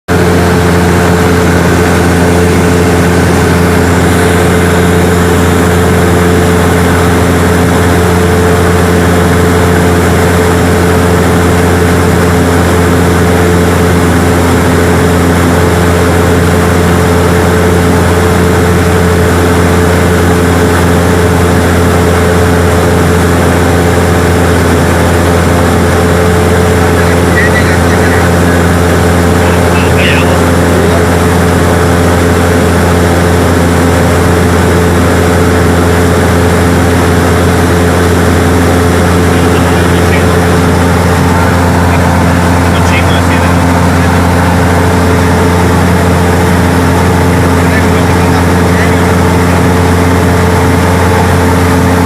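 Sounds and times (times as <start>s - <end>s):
propeller plane engine drone: 0.0s - 52.0s.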